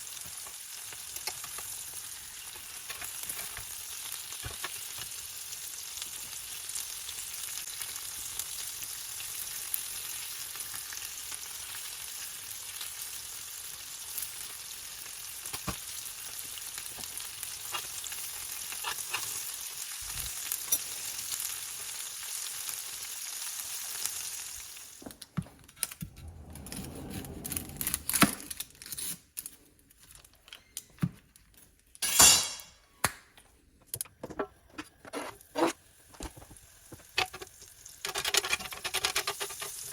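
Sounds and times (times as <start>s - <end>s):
steak sizzling in a pan: 0.0s - 25.1s.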